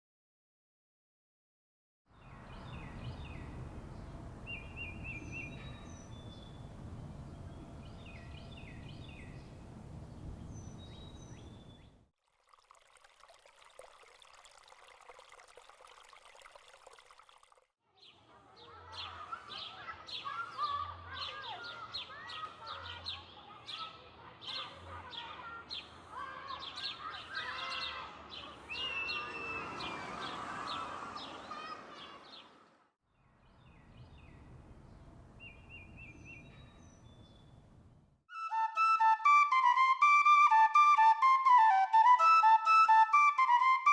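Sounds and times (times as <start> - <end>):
many birds singing and chirping: 2.2 - 11.9, 19.0 - 32.4, 33.6 - 37.7
low wind rumble: 2.2 - 12.0, 33.5 - 38.1.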